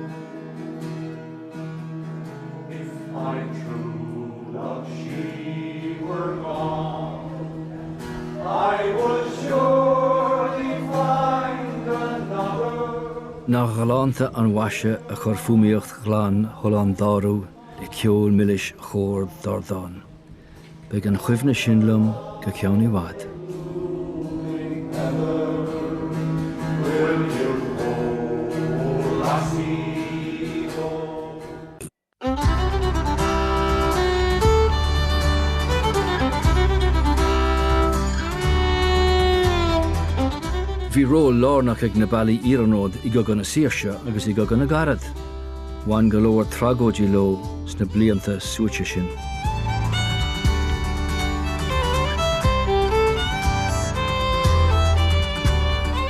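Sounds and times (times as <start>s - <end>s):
plucked acoustic guitar: 0.0s - 56.0s
choir singing slow song: 2.7s - 13.5s, 21.7s - 31.8s
person singing: 21.3s - 31.6s
held accompaniment: 47.0s - 56.0s.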